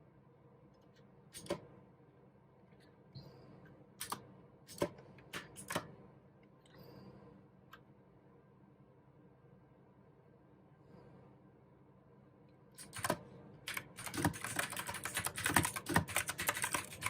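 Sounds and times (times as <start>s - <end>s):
clicky keyboard keystrokes: 12.8s - 17.0s.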